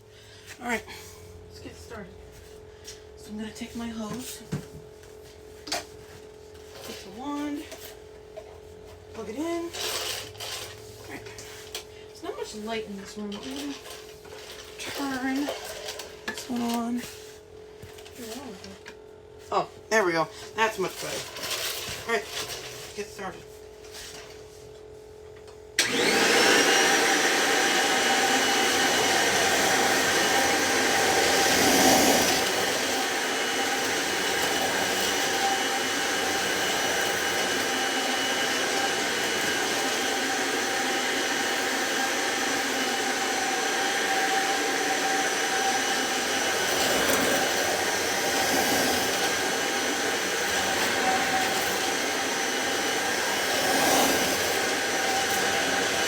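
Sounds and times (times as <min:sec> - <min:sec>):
vacuum cleaner motor whining: 0:09.2 - 0:17.1, 0:20.0 - 0:23.4, 0:25.8 - 0:56.0.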